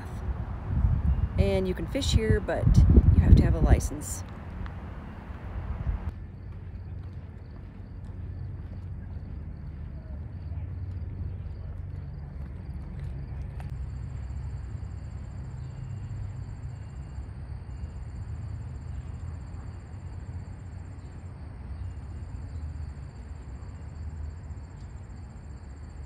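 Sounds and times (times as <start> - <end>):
road traffic rumble: 0.0 - 6.3.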